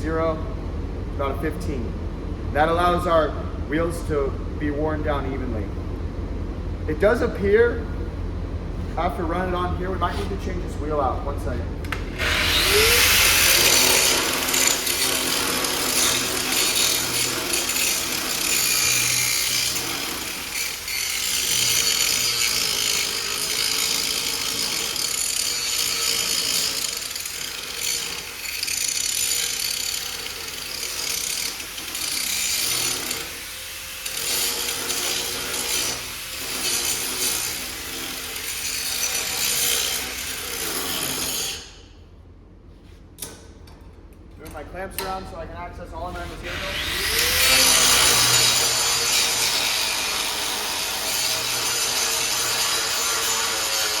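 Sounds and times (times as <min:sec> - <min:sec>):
angle grinder grinding steel: 0:12.2 - 0:41.8, 0:46.4 - 0:54.0.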